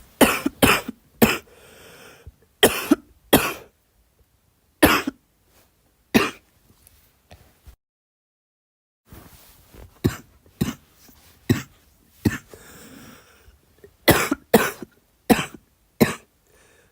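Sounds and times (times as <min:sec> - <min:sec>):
girl coughing: 0:00.2 - 0:01.5, 0:02.6 - 0:03.7, 0:04.8 - 0:05.2, 0:06.2 - 0:06.4, 0:11.5 - 0:12.5, 0:14.1 - 0:16.3
soft breath: 0:01.5 - 0:02.3, 0:12.4 - 0:13.6, 0:16.4 - 0:16.9.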